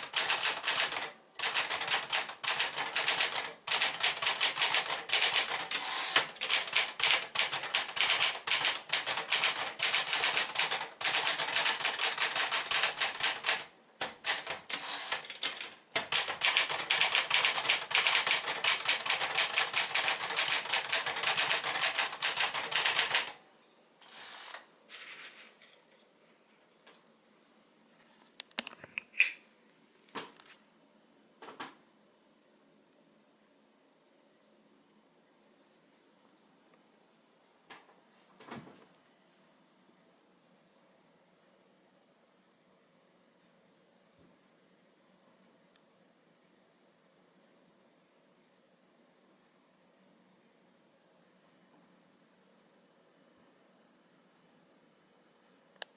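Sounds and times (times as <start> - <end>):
typewriter keys clacking: 0.0 - 23.4.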